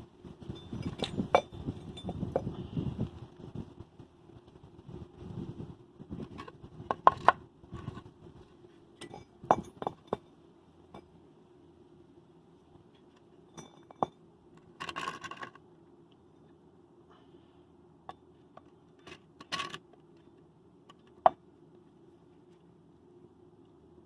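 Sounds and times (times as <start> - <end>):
small metal parts clinking: 13.5 - 15.6, 19.0 - 19.8
metal parts rattling: 14.7 - 15.6, 19.0 - 19.8.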